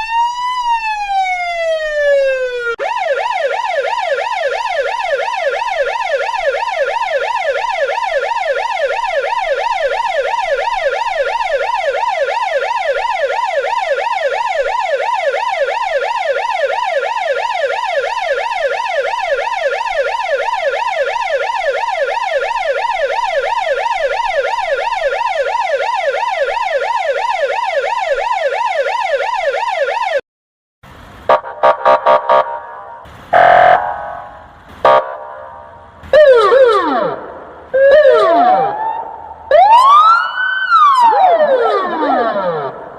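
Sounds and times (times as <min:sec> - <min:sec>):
police siren rising sweep: 0:00.0 - 0:30.2, 0:31.0 - 0:42.9
short loud siren bursts: 0:31.3 - 0:42.9.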